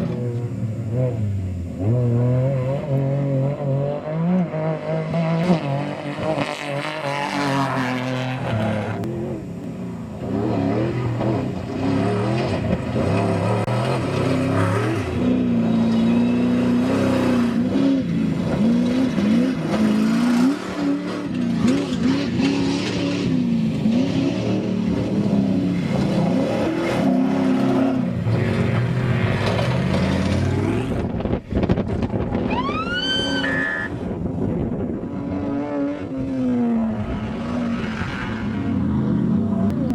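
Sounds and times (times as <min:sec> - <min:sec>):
race truck engines revving: 0:00.0 - 0:39.9.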